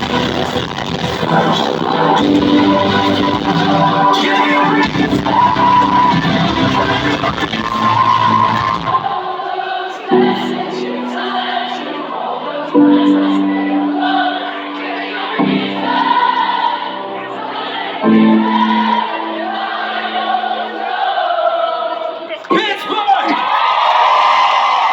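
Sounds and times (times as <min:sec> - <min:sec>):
rock band playing chords: 0:00.0 - 0:08.8
person singing: 0:00.0 - 0:22.3.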